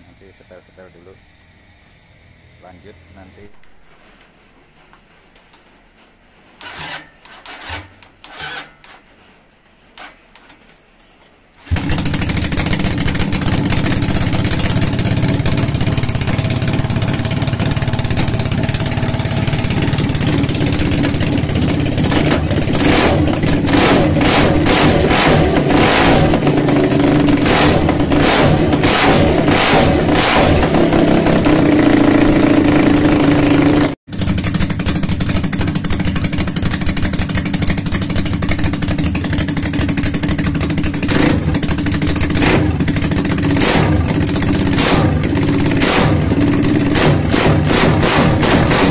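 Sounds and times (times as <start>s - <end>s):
engine running steadily: 11.7s - 48.9s
engine revving in throttle blips: 19.6s - 34.0s, 41.0s - 48.9s.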